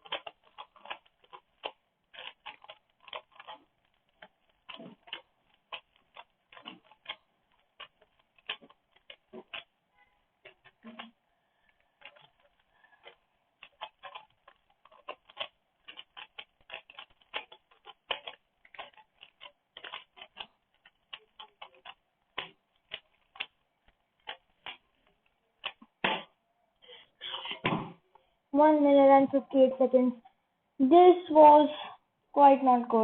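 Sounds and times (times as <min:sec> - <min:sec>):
puzzle cube plastic clicks: 0:00.0 - 0:26.1.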